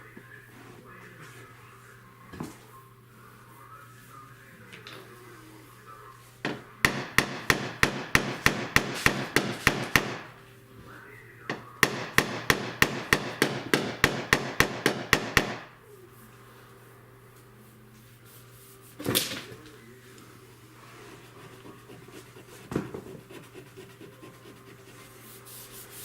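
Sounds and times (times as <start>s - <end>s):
hammer tapping car body panel: 6.9s - 10.3s, 11.8s - 15.7s.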